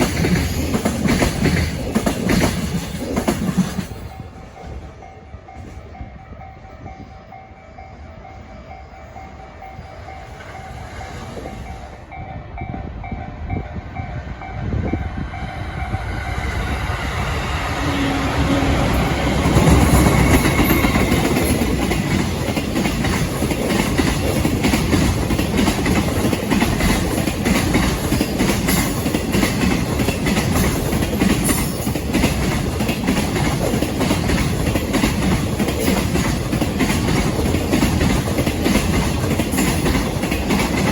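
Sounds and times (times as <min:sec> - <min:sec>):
wheels clicking over rail joints: 0:00.0 - 0:04.8, 0:18.8 - 0:40.9
freight train rumbling: 0:00.0 - 0:40.9.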